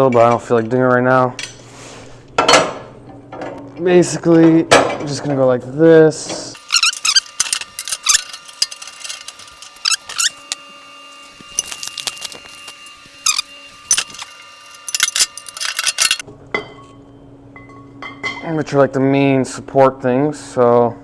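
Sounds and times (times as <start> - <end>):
metal bolts and parts clinking: 6.6 - 10.7, 11.4 - 16.2.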